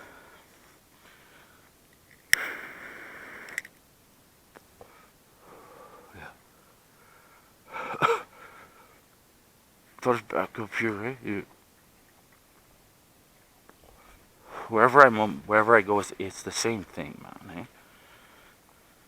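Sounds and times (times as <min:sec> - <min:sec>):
person sniffing sharply: 0:02.3 - 0:03.6.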